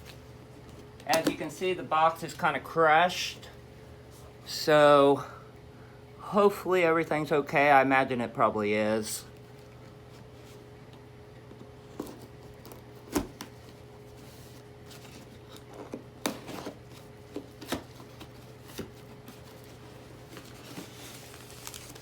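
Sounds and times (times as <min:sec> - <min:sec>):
faint steady hum: 0:00.0 - 0:22.0
cardboard box being opened: 0:11.8 - 0:22.0.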